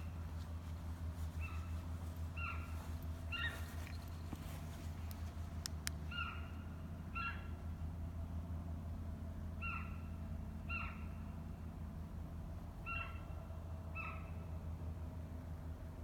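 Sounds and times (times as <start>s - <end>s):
deer whistling calls: 1.4s - 4.0s.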